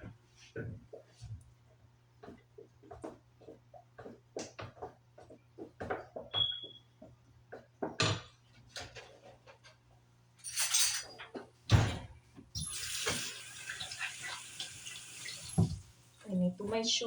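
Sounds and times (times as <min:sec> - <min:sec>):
dishes and utensils clattering: 0:10.4 - 0:14.4
water running from tap: 0:12.6 - 0:16.3.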